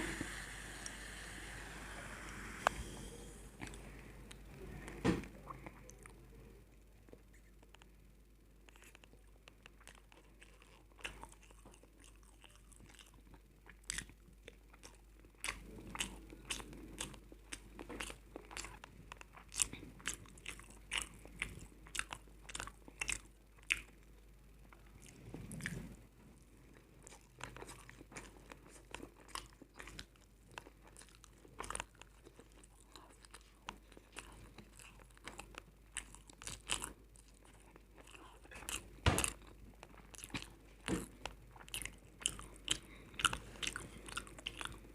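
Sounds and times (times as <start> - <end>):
person chewing crunchy chips: 8.7 - 24.0, 27.0 - 44.9.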